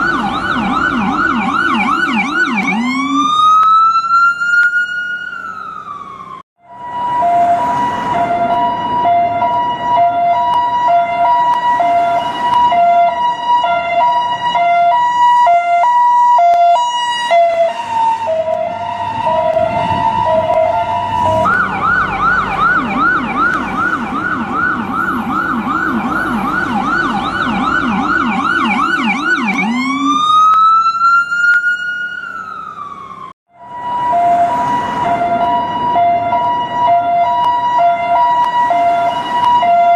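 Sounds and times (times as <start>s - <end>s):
ambulance siren: 0.0s - 39.9s.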